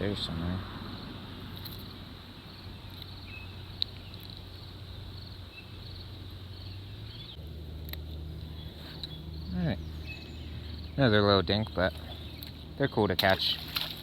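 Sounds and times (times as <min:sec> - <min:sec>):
low outdoor hum: 0:00.0 - 0:14.0
insects chirping: 0:00.6 - 0:07.4, 0:08.0 - 0:14.0.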